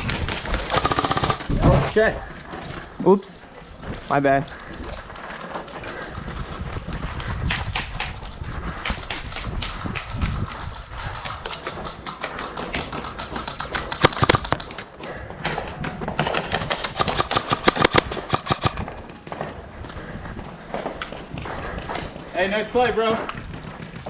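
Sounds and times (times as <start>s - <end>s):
airsoft guns firing: 0.7s - 1.8s, 14.0s - 14.7s, 16.9s - 19.0s.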